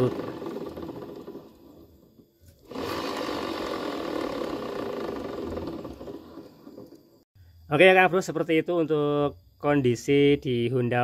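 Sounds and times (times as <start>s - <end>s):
wheel bearing grinding whirr: 0.0s - 7.2s.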